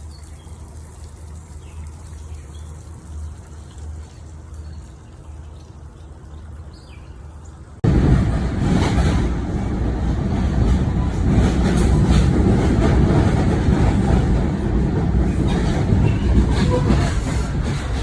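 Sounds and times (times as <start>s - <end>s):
moving vehicle rumble: 7.8s - 18.0s.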